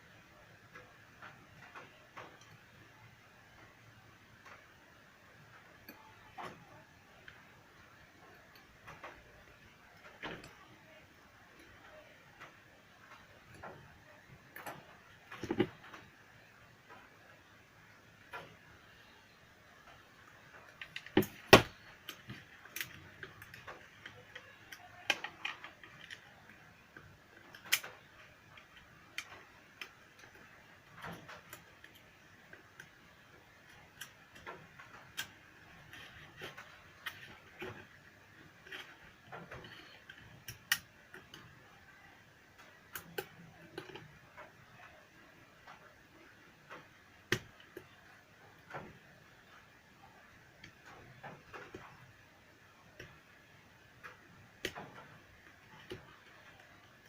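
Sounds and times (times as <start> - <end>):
hand tools clicking and tapping: 20.2 - 41.5.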